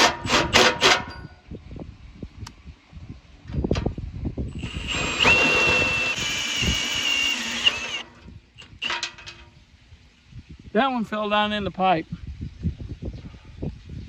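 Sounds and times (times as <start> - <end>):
power tool whining on metal: 4.5 - 9.4.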